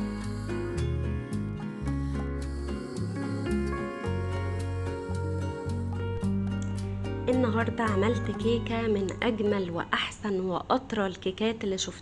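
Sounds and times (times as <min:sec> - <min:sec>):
background music with steady beat: 0:00.0 - 0:09.6.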